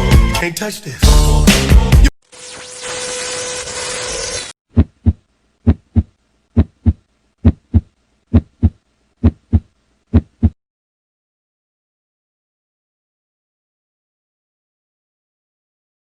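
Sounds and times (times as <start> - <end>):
heartbeat: 4.7 - 10.6.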